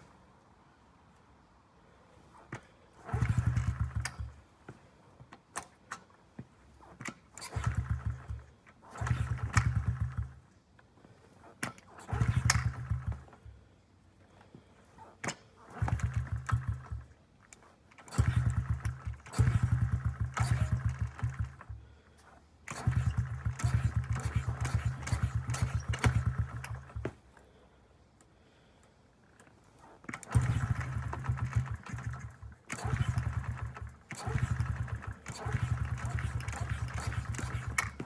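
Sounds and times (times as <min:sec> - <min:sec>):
small engine being kickstarted: 0:02.3 - 0:04.4, 0:05.5 - 0:10.5, 0:11.4 - 0:13.6, 0:14.8 - 0:27.3, 0:29.3 - 0:38.0.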